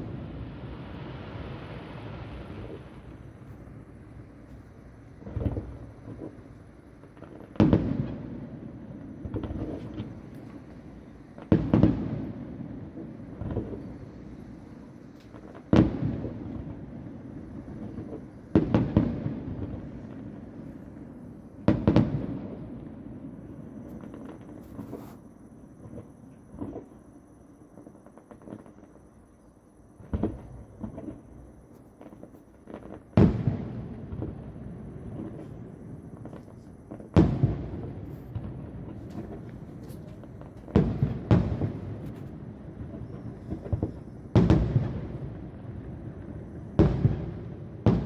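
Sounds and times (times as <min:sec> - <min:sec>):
distant firework shells bursting: 0:35.0 - 0:48.0.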